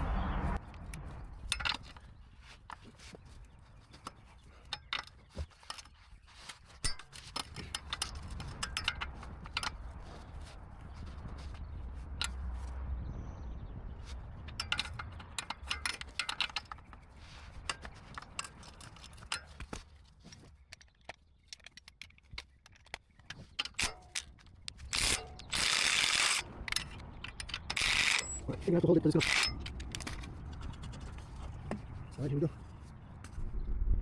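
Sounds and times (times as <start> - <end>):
tool clatter: 1.4 - 12.4, 14.4 - 31.9
hand ratchet clicking: 21.6 - 28.5, 29.2 - 30.1.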